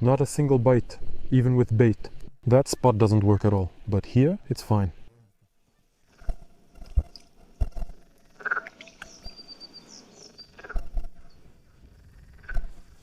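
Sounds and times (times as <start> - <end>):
frogs croaking: 5.7 - 13.0.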